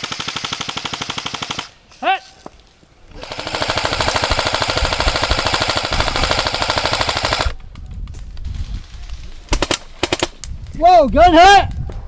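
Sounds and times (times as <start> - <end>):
airsoft rifle full-auto burst: 3.1 - 7.6
sharp cracks: 3.1 - 10.8.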